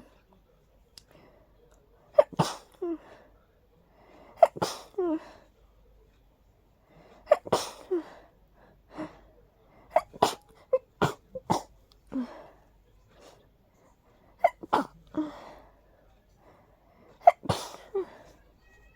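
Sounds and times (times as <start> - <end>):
person sneezing: 4.4 - 5.0, 17.2 - 18.2.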